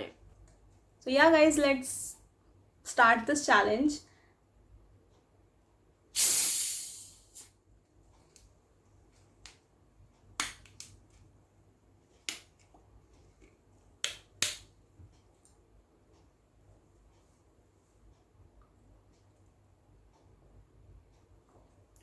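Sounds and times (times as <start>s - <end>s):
carbonation hiss: 6.2s - 7.5s.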